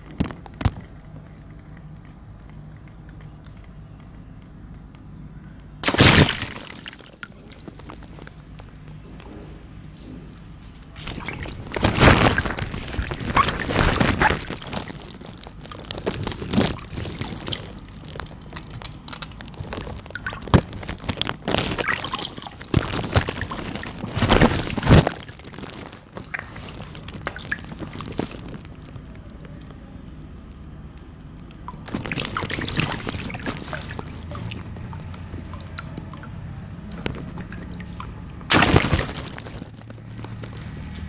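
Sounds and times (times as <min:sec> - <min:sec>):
water splashing and pouring: 0:05.8 - 0:08.4, 0:11.0 - 0:29.8, 0:31.7 - 0:41.0
water balloons bursting: 0:05.8 - 0:08.6, 0:10.8 - 0:30.4, 0:31.7 - 0:41.0.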